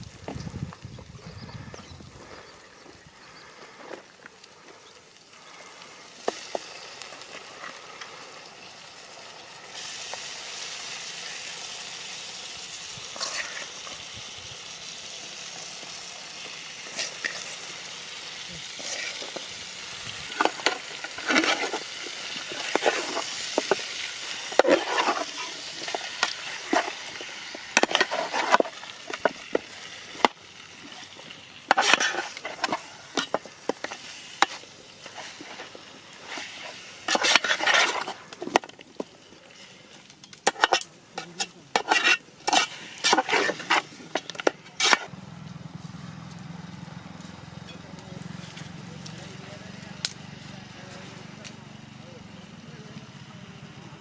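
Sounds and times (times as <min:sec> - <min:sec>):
chicken sizzling in a pan: 0:04.0 - 0:45.2
utensil scraping and knocking pan: 0:18.6 - 0:31.0, 0:31.7 - 0:39.1, 0:40.4 - 0:45.1.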